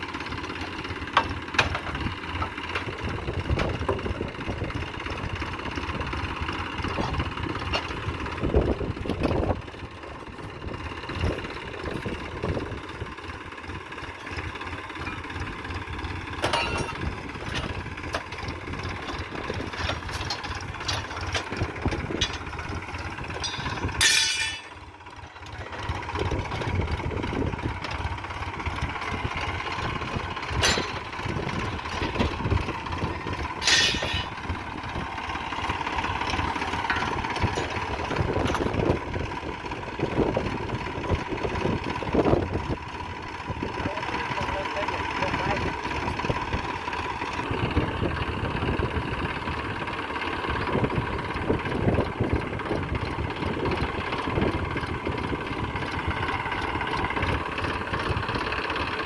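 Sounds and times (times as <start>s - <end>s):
diesel engine running: 0.0s - 59.0s
knocks and clanks: 1.1s - 4.1s, 16.4s - 28.0s, 29.4s - 35.0s, 36.2s - 39.0s.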